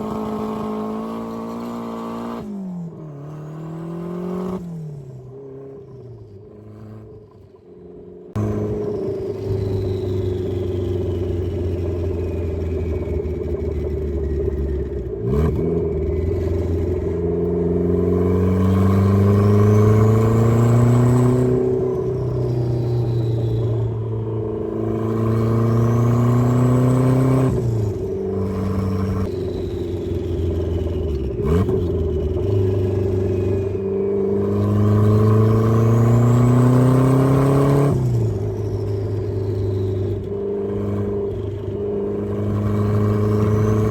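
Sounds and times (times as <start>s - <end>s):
car engine revving hard: 15.2s - 29.3s, 30.5s - 43.9s.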